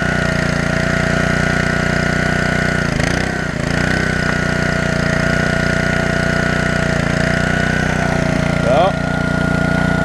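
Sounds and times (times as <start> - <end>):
wood splitter engine running: 0.0 - 10.0.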